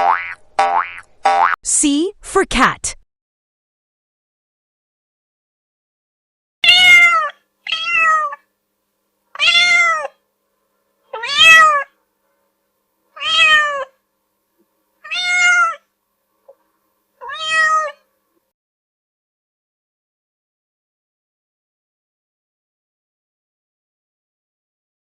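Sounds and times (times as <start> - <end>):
cat meowing: 6.6 - 8.5, 9.4 - 10.2, 11.1 - 11.9, 13.2 - 14.0, 15.0 - 15.8, 17.2 - 18.0.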